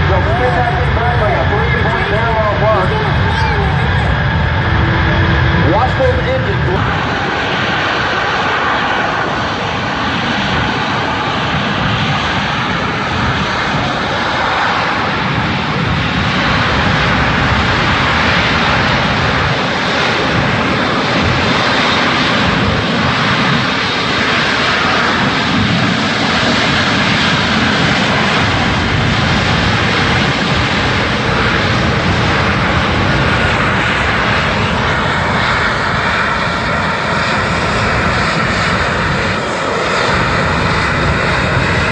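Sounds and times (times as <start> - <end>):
airplane engines roaring: 0.0 - 41.9.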